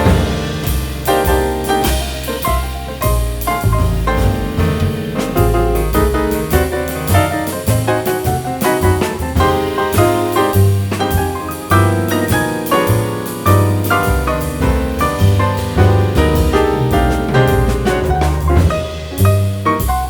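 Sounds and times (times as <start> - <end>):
jazz with piano bass and drums: 0.0 - 20.0.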